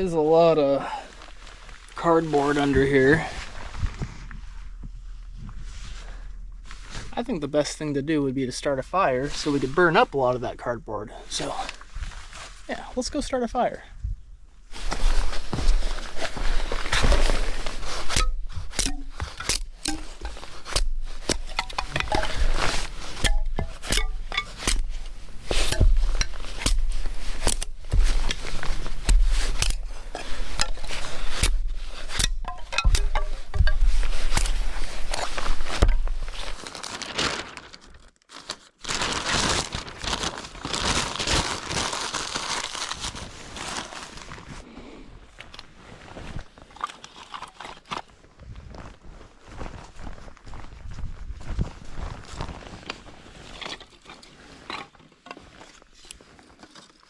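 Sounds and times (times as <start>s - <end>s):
fire crackling: 14.7s - 36.6s
paper crumpling and tearing: 14.7s - 44.6s.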